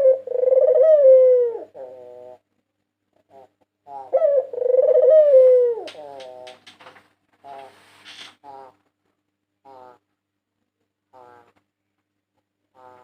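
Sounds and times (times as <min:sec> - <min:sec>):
dove cooing: 0:00.0 - 0:02.5, 0:03.2 - 0:06.7.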